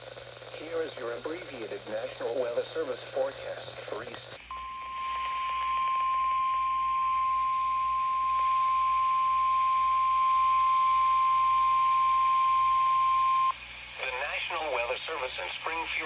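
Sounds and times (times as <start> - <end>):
radio hiss: 0.0 - 5.8, 10.0 - 16.0
loud steady alarm beep: 1.5 - 13.5.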